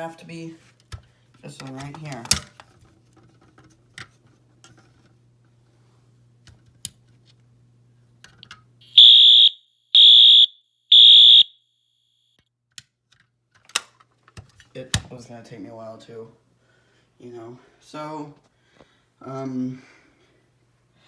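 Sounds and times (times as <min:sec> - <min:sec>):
fire alarm blasts: 0:08.8 - 0:12.2.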